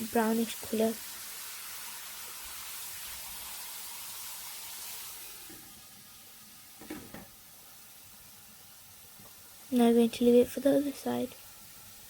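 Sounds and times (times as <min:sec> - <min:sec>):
chicken sizzling in a frying pan: 0:00.0 - 0:12.0.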